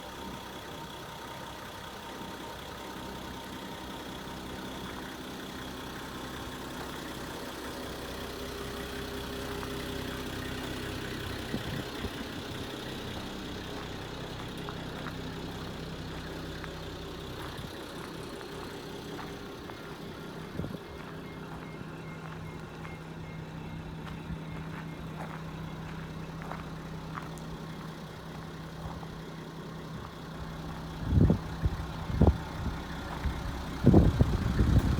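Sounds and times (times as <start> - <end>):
diesel engine idling: 0.0 - 34.9.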